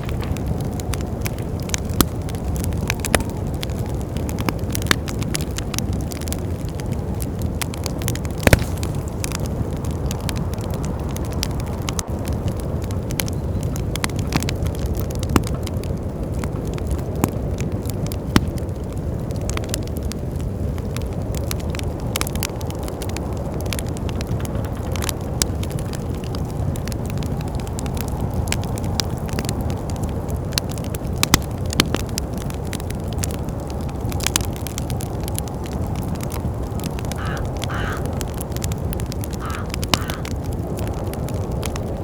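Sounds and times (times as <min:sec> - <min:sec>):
low rumble of wind: 0:00.0 - 0:42.0
wood fire crackling and popping: 0:00.0 - 0:42.0.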